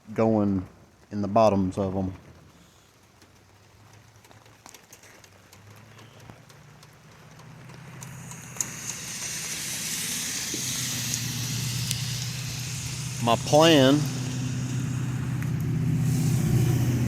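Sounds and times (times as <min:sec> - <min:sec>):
faint ticks: 0:02.2 - 0:09.6
vehicle approaching: 0:02.2 - 0:17.0.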